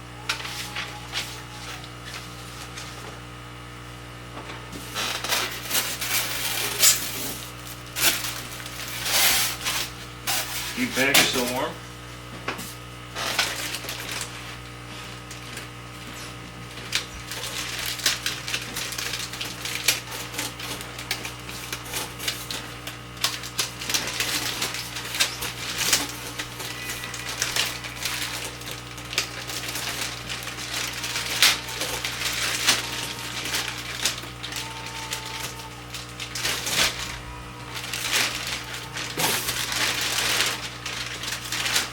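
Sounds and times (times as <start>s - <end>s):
steady low hum: 0.0s - 41.9s
packing materials crinkling: 0.2s - 3.1s, 4.8s - 11.8s, 12.7s - 41.9s.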